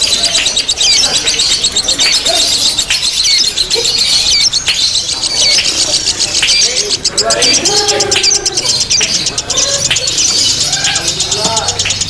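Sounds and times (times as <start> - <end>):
lovebirds chirping and trilling: 0.0 - 12.0.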